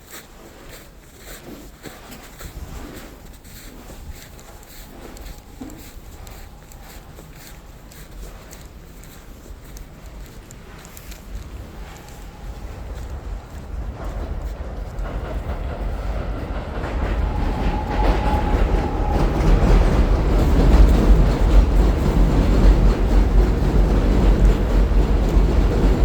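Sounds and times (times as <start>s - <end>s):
train on elevated steel tracks: 0.0s - 26.0s.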